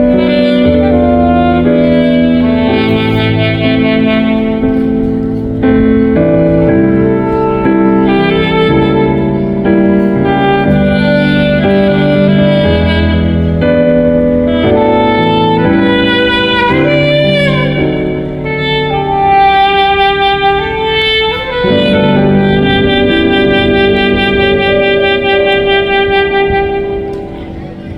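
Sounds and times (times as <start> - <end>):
piano and bass accompaniment: 0.0 - 27.9
saxophone melody: 0.0 - 27.9.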